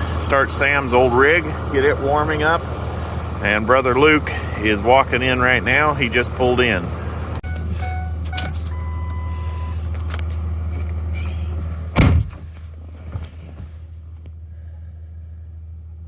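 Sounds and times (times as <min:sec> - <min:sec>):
diesel engine idling: 0:00.0 - 0:16.0
electronic chime tone: 0:07.4 - 0:09.8
truck door slamming: 0:11.9 - 0:12.5.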